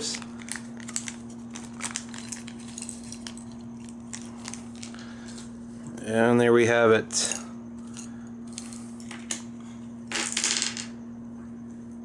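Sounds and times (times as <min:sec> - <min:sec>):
plastic bag crinkling: 0:00.0 - 0:05.5.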